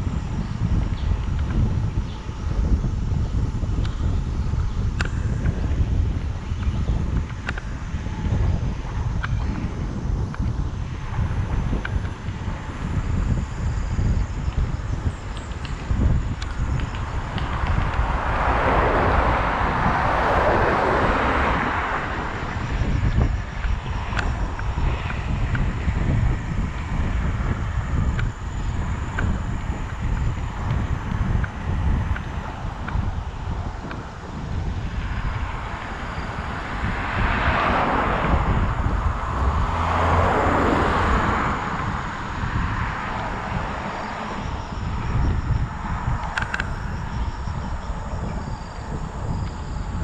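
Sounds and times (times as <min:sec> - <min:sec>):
bicycle road noise: 0:00.0 - 0:50.0
wind on microphone: 0:00.0 - 0:50.0
vehicle passing: 0:15.6 - 0:25.4, 0:34.7 - 0:45.1.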